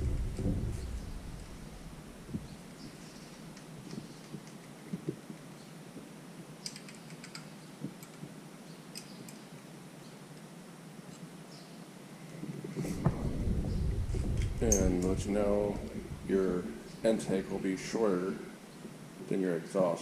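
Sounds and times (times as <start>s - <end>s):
small metal tools clicking: 6.6s - 8.2s, 8.9s - 9.5s.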